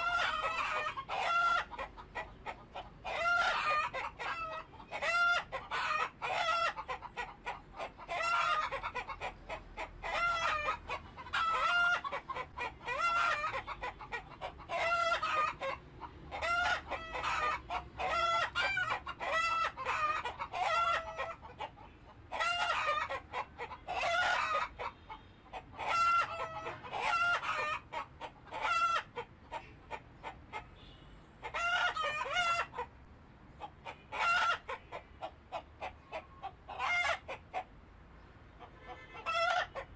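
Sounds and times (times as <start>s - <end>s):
chickens calling: 0.0s - 33.0s, 33.6s - 39.9s.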